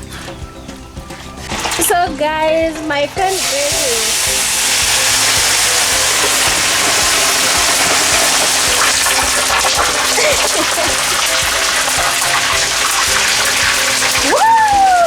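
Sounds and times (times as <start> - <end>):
fish sizzling in hot oil: 3.3 - 15.0.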